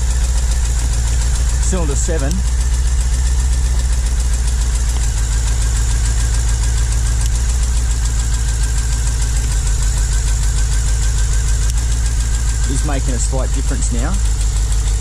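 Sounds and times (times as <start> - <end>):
engine idling with a miss: 0.0 - 15.0.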